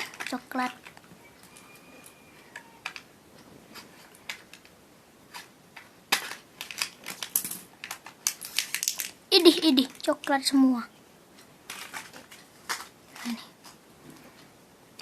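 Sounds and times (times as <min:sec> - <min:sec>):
plastic wrapping crinkling: 0:06.1 - 0:10.4.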